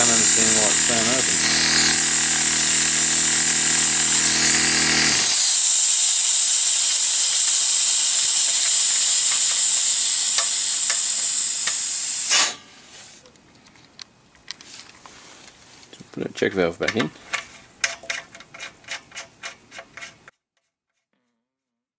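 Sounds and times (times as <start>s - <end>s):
air compressor running: 0.0s - 12.6s
compressed air hissing: 5.2s - 13.2s.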